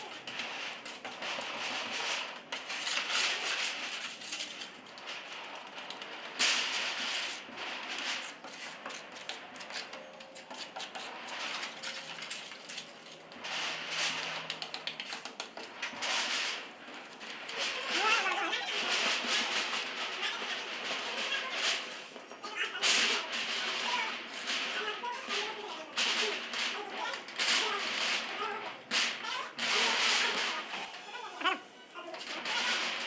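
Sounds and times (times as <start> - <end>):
hand tool scraping cement: 0.0 - 33.0.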